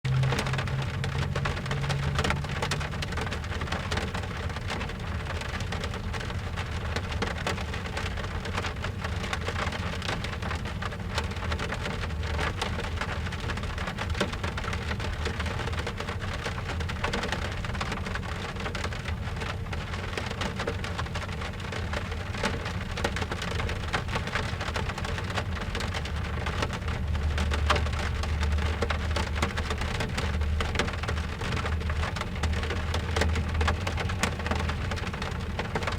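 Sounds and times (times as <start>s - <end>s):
low rumble: 0.1s - 4.0s
rain on car roof and glass: 0.1s - 35.9s.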